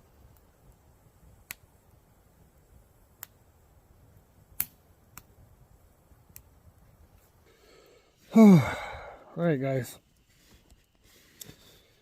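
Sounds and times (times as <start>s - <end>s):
campfire pops: 0.0s - 7.5s.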